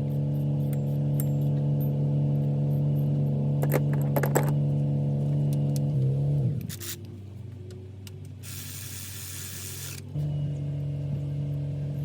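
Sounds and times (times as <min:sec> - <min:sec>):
motor hum: 0:00.0 - 0:12.0
aerosol spray hissing: 0:08.4 - 0:10.0.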